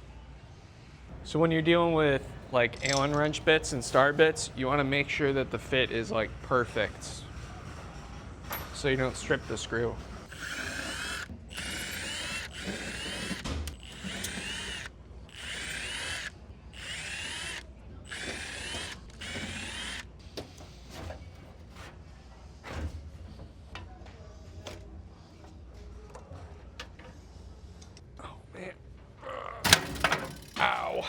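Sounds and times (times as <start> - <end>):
power drill whining in bursts: 10.3 - 20.1.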